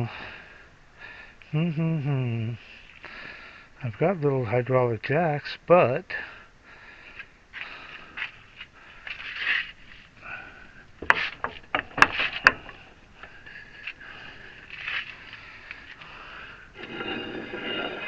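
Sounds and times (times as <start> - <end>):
rubbing and scraping on metal: 9.1 - 10.2, 11.0 - 16.0, 16.8 - 18.0
sharp knocks: 11.0 - 12.9.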